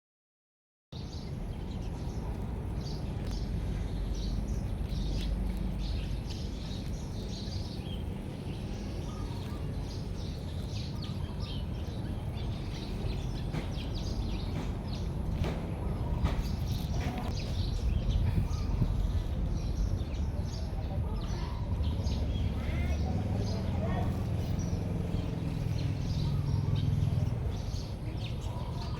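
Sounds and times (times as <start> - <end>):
constant low rumble: 1.0 - 28.9.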